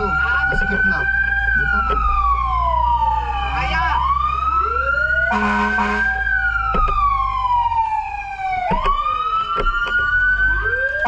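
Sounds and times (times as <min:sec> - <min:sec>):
fire truck siren wailing: 0:00.0 - 0:11.0
horn blast: 0:05.3 - 0:06.1.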